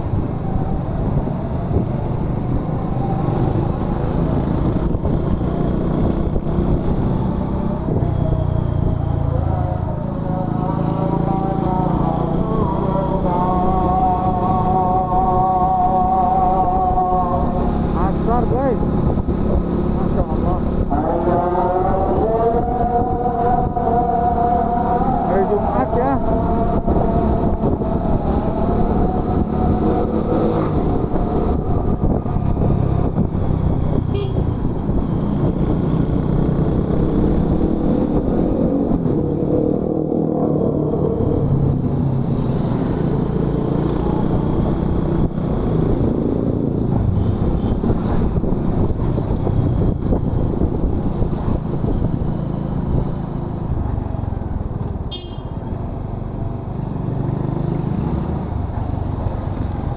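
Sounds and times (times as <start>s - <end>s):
wind and road noise: 0.0s - 59.9s
motorcycle engine running: 10.6s - 40.1s.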